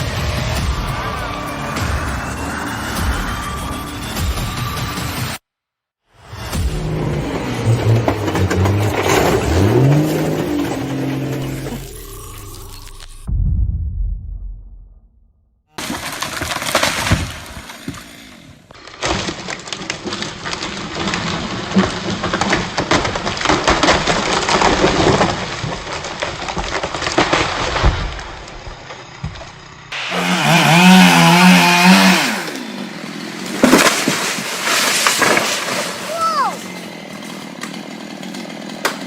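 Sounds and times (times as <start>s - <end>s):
chainsaws cutting wood: 6.8s - 12.4s, 15.8s - 39.0s
timber cracking and breaking: 15.7s - 29.6s, 31.2s - 39.0s.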